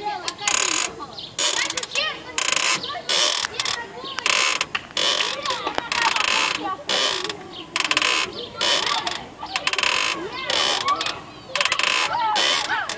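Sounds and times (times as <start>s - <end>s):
clutch creaking: 0.2s - 12.9s
short squeaks: 0.3s - 12.9s.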